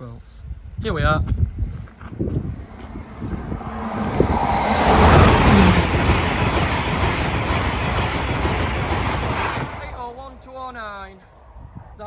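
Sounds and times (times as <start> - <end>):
train passing at speed: 1.9 - 11.0.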